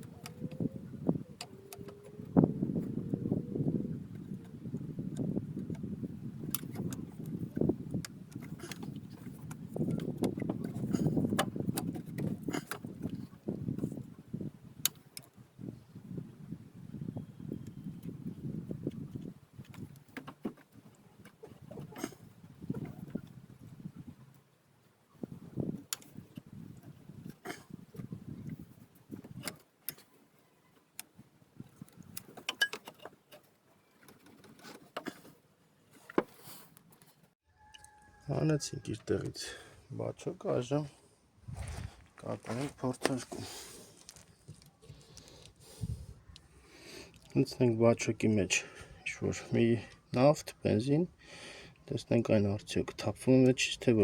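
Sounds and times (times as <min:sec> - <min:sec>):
clicks and knocks of tools: 0:31.8 - 0:37.2
rustling: 0:41.4 - 0:47.3.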